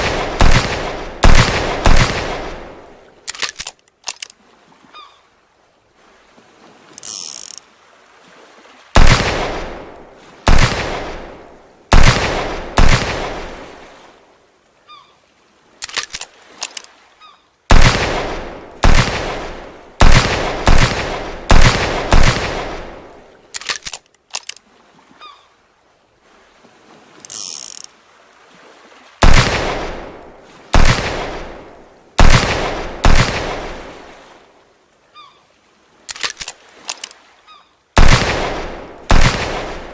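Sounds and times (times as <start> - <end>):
revolver gunshots echoing: 0.0 - 2.8, 9.0 - 9.9, 10.5 - 13.5, 17.7 - 23.1, 29.2 - 30.2, 30.8 - 33.9, 38.0 - 39.9
short clicks: 15.8 - 16.9, 23.6 - 24.6, 36.1 - 37.2.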